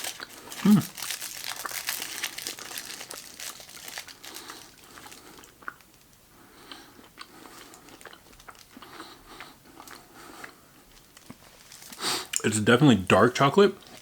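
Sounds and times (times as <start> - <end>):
wrapper crinkling: 0.0 - 6.2, 10.9 - 12.0, 13.8 - 14.0
chocolate bitten and chewed: 0.0 - 12.4.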